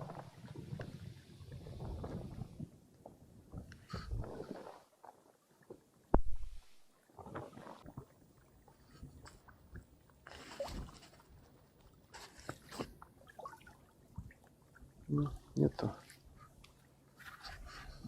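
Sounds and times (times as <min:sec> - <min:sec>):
water splashing: 0:06.6 - 0:17.5.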